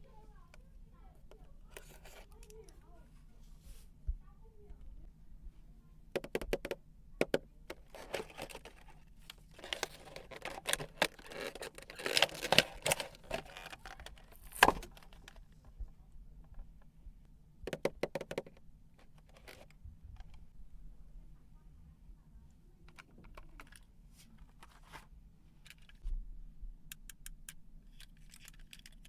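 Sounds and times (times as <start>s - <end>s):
plastic clicks and knocks: 6.2s - 15.8s, 17.7s - 20.4s
packaging rustling and crinkling: 7.7s - 15.5s.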